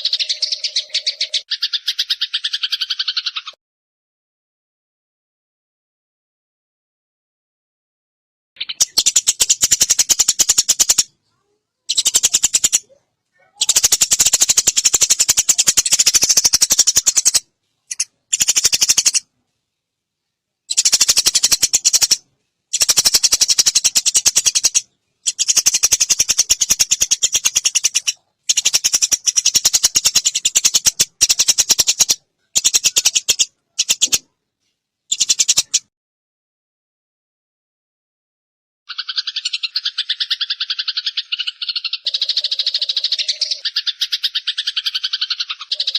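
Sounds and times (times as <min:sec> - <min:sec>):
sparrows chirping: 0:00.0 - 0:03.6, 0:08.6 - 0:19.3, 0:20.7 - 0:34.3, 0:35.1 - 0:35.9, 0:38.9 - 0:45.9.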